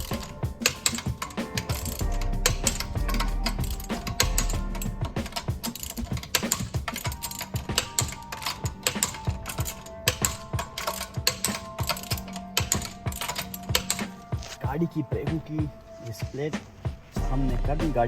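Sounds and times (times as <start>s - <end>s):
ratchet wrench clicking: 0.0s - 14.3s
faint background music: 0.0s - 18.0s.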